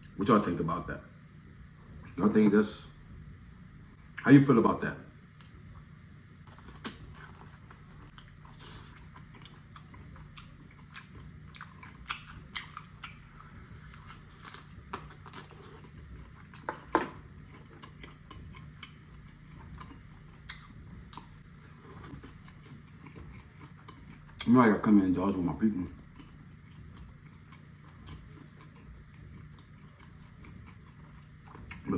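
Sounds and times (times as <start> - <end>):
steady low hum: 0.0 - 31.9
chewing and biting food: 6.4 - 31.9.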